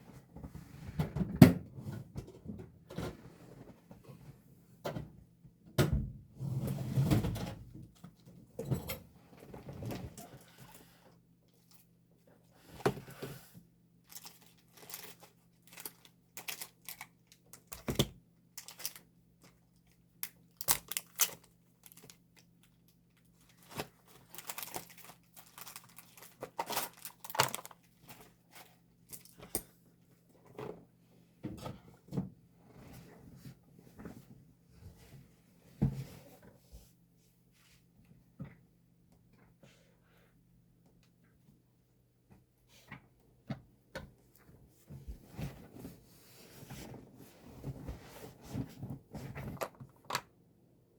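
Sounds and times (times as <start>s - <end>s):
packaging crinkling: 14.1s - 17.9s, 18.6s - 19.1s, 20.2s - 22.8s, 23.4s - 28.3s.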